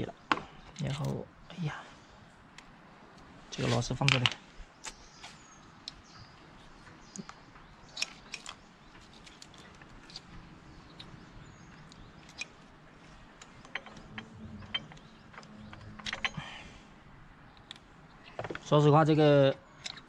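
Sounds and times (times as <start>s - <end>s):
metal clicks of hand tools: 11.8s - 12.6s, 13.4s - 16.6s, 19.8s - 20.0s.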